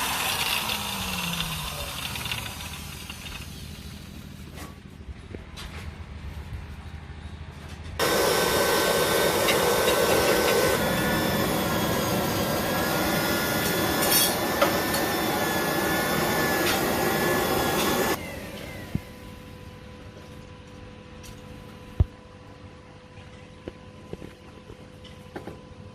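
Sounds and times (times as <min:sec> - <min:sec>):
grinder grinding steel blade: 0:00.0 - 0:03.8, 0:08.1 - 0:18.2
low motor hum: 0:00.0 - 0:25.9.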